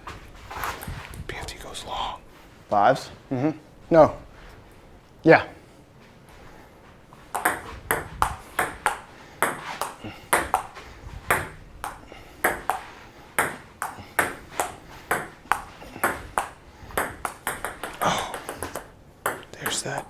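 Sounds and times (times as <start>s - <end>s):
ping-pong ball clicking: 7.3s - 20.0s.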